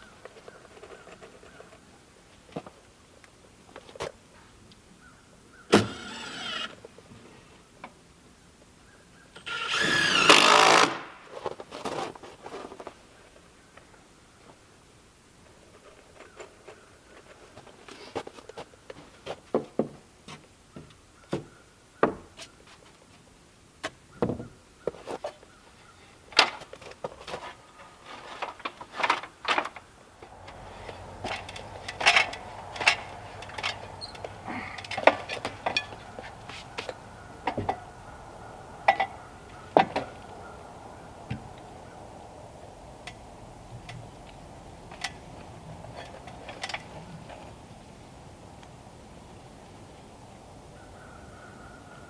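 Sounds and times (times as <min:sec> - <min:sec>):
wood knocking and clunking: 0:19.4 - 0:22.5, 0:23.8 - 0:25.0, 0:41.3 - 0:41.6.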